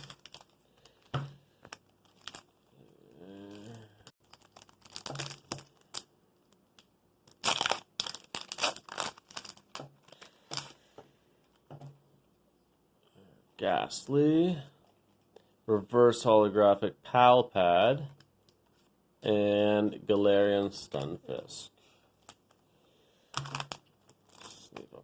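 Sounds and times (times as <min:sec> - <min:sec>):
foil wrapper tearing and crinkling: 0:00.0 - 0:02.5, 0:03.6 - 0:06.1, 0:07.3 - 0:10.7.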